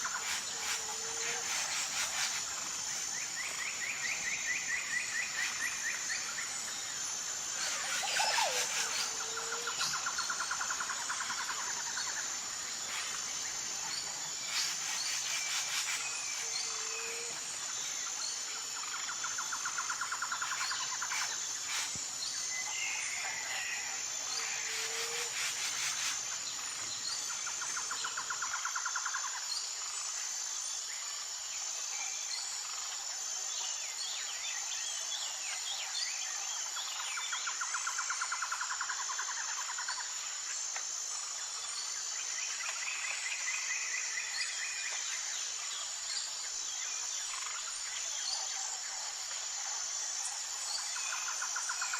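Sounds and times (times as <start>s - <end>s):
insect drone: 0.0s - 51.9s.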